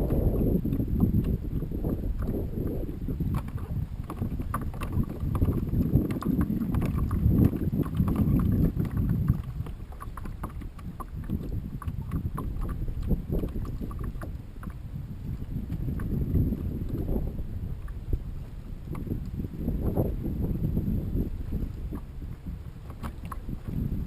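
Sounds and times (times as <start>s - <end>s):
water lapping against kayak hull: 0.0s - 24.0s
wind rumble on microphone: 0.0s - 24.0s.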